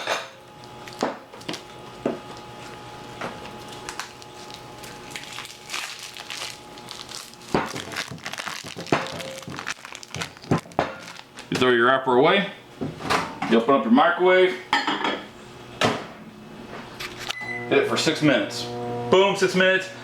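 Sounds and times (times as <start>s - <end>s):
wrapper crinkling and tearing: 3.5s - 11.5s.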